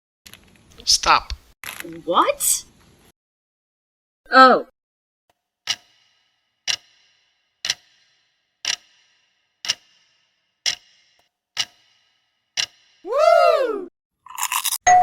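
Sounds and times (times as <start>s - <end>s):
clock-like ticking: 5.6s - 13.1s.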